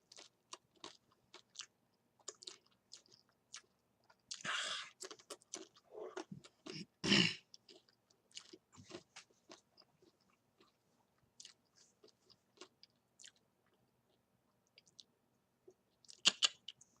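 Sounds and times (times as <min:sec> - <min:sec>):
chewing crunches: 0:00.0 - 0:06.9, 0:07.5 - 0:10.8, 0:11.4 - 0:14.2.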